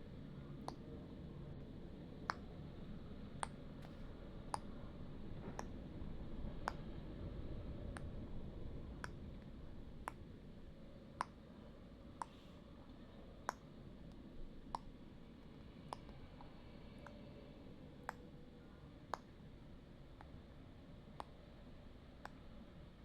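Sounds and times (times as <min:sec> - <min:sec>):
low steady rumble: 0:00.0 - 0:23.0
faint sharp clicks: 0:06.6 - 0:06.9, 0:07.9 - 0:08.2, 0:12.2 - 0:12.6, 0:15.9 - 0:17.2, 0:21.2 - 0:21.4, 0:22.2 - 0:22.5.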